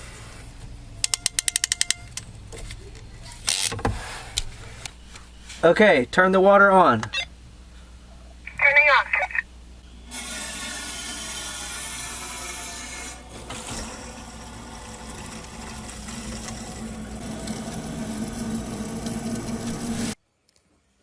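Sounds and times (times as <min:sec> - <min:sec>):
water rushing through pipes: 0:11.2 - 0:20.2.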